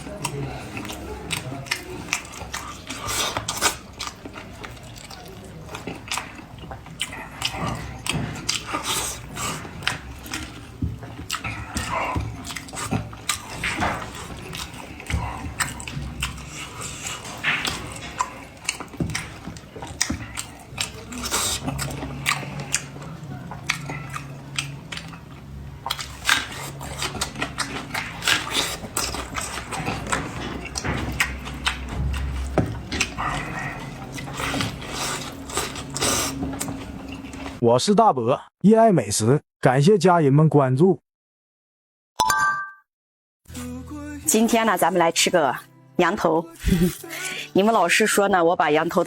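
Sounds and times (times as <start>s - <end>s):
person chewing wetly: 0.0s - 37.6s.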